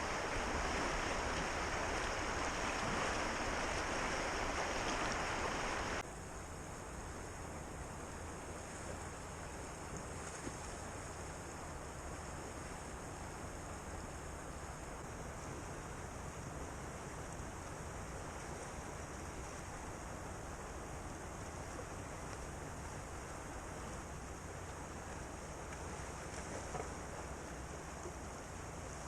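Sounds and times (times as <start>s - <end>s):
whitewater rushing: 0.0s - 6.0s.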